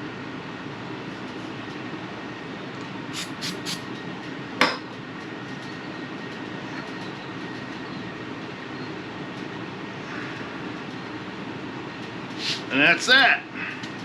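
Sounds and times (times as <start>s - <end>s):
steady background hum: 0.0s - 14.0s
spray bottle hissing: 3.2s - 3.8s.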